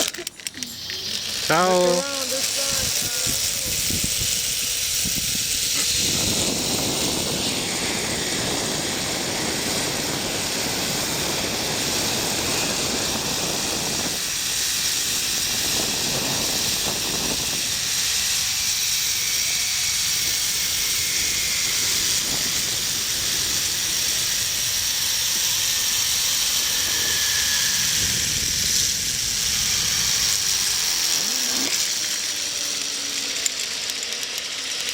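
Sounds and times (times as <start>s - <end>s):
zipline pulleys on steel cable: 0.0s - 34.9s
wind on microphone: 2.6s - 18.3s, 19.9s - 31.8s.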